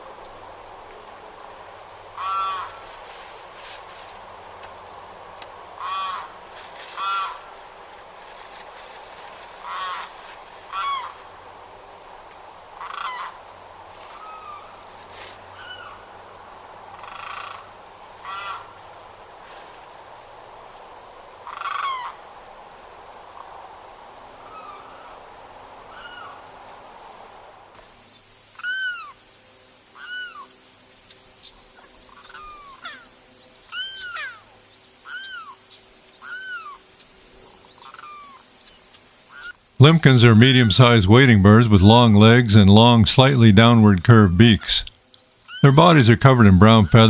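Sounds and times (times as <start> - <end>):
bird calling loudly: 28.5 - 29.2, 30.0 - 30.6, 31.3 - 39.6, 45.4 - 45.7.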